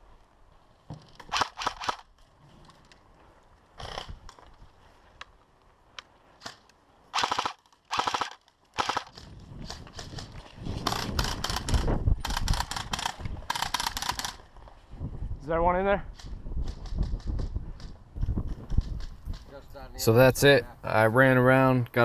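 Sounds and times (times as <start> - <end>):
airsoft guns firing bursts: 7.1 - 9.2.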